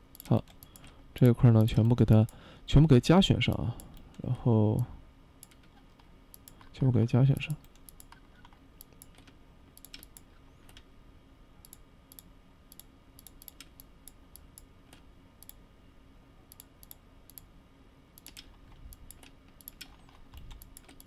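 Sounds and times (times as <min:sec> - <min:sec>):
mouse and keyboard clicks: 0:18.2 - 0:21.0.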